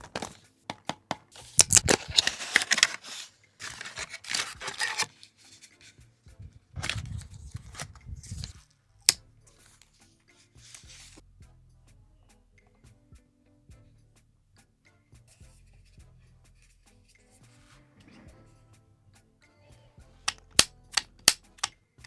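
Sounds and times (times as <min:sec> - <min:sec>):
tearing cardboard and plastic: 0:01.4 - 0:05.9, 0:06.8 - 0:09.2.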